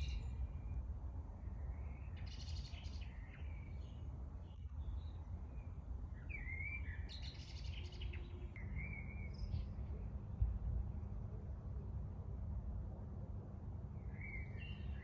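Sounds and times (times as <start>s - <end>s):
steady low rumble: 9.4s - 13.8s.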